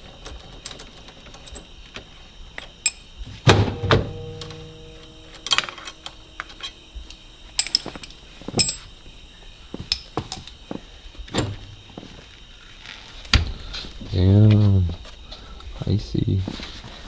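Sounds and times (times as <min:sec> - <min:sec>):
metal parts knocking and clinking: 0:00.0 - 0:09.1, 0:09.7 - 0:12.0.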